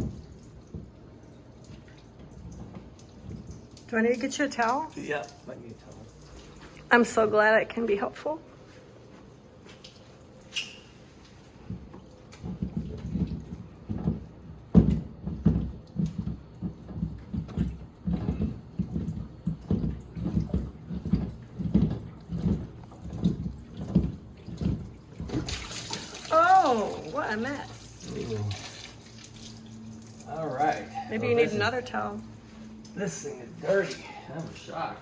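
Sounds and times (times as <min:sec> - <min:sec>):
low splashes and knocks: 0:00.0 - 0:03.8, 0:11.6 - 0:30.8
water sloshing and dripping: 0:00.0 - 0:35.0.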